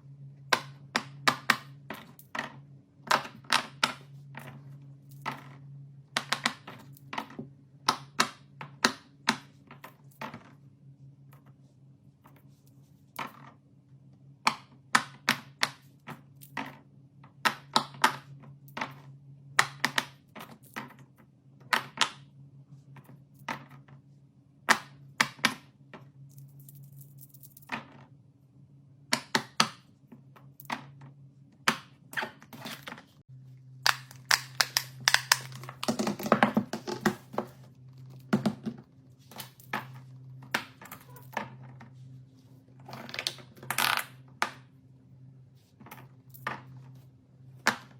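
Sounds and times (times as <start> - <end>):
low steady hum: 0.0 - 47.9
fidget toys clicking and popping: 33.8 - 36.0.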